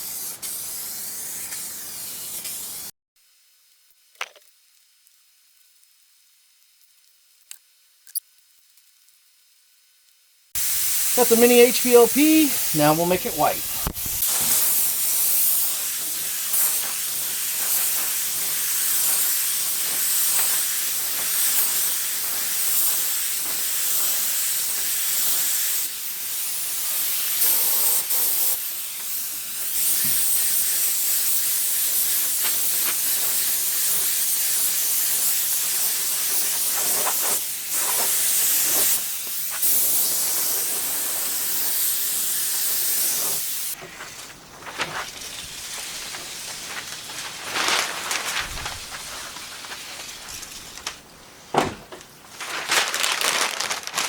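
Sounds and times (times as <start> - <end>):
spray gun hissing: 0.0 - 2.9, 10.6 - 43.8.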